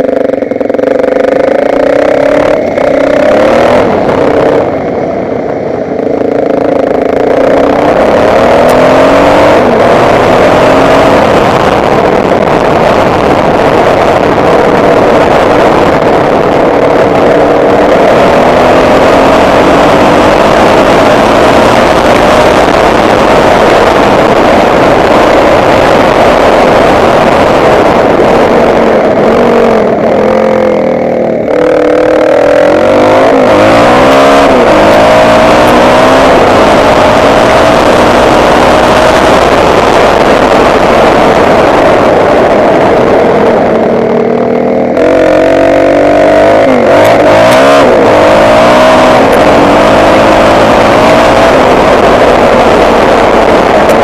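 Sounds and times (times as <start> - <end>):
motocross bike engine revving: 0.0 - 54.0.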